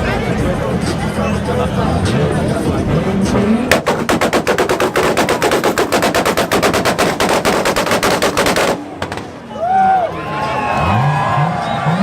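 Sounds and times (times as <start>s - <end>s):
car exhaust pops and bangs: 3.7s - 9.5s.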